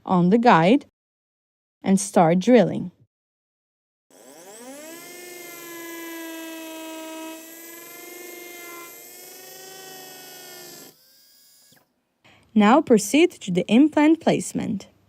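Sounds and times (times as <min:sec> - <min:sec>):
surgical drill whining: 0:04.1 - 0:12.0.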